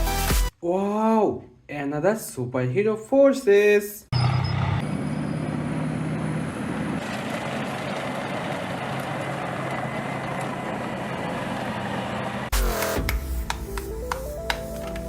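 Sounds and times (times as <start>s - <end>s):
vehicle engine running: 4.2s - 15.0s.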